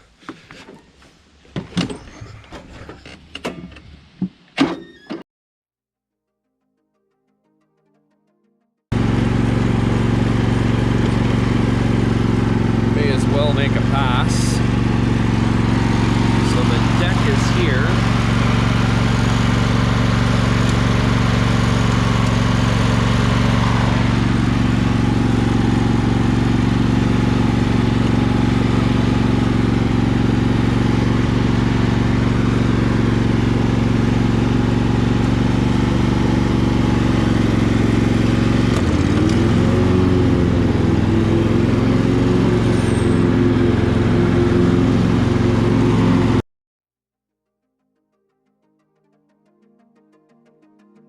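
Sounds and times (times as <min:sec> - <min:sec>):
lawn tractor engine running: 0:08.9 - 0:46.4.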